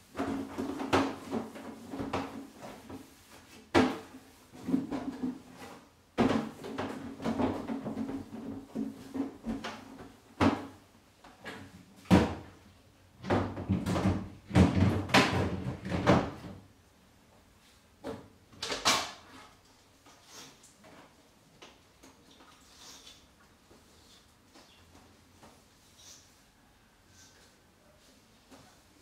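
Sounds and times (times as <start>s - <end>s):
doors and drawers knocking: 13.2s - 16.6s.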